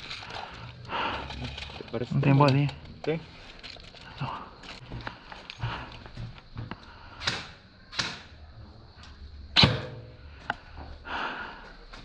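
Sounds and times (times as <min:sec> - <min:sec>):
airsoft gun shots: 0:07.2 - 0:08.3, 0:09.6 - 0:10.1.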